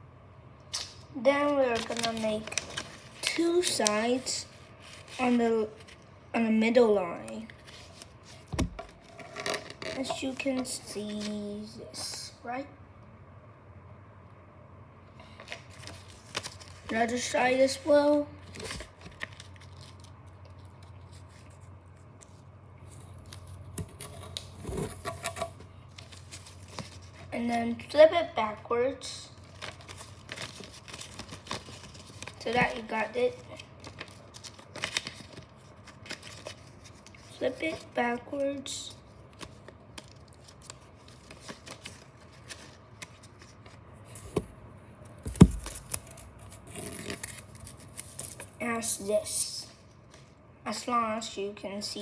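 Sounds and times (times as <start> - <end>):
paper rustling and crinkling: 1.3 - 6.0, 7.4 - 11.5, 15.3 - 27.8, 29.3 - 44.4, 45.2 - 48.6.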